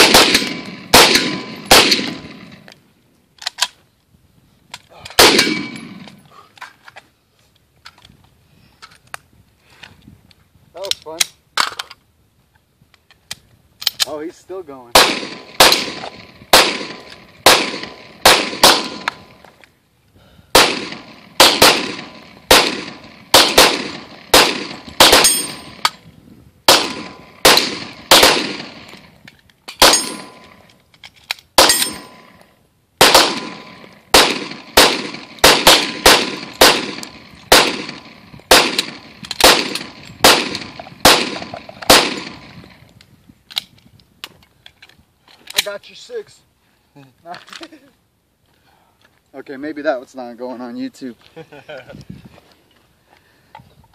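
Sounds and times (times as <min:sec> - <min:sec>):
rifle shots with echo: 0:00.0 - 0:02.7, 0:05.2 - 0:06.1, 0:14.9 - 0:19.4, 0:20.5 - 0:25.8, 0:26.7 - 0:29.1, 0:29.8 - 0:30.6, 0:31.6 - 0:32.4, 0:33.0 - 0:42.8.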